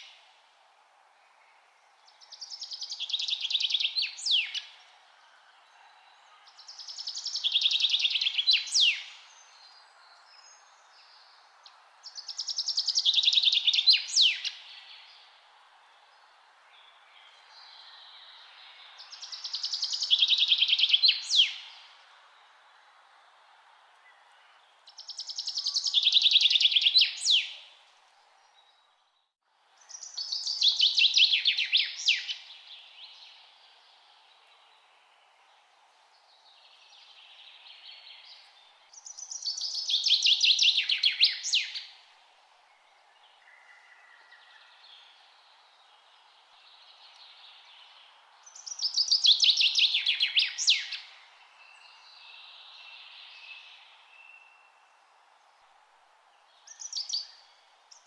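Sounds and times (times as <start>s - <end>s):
distant bird singing: 56.5s - 58.0s.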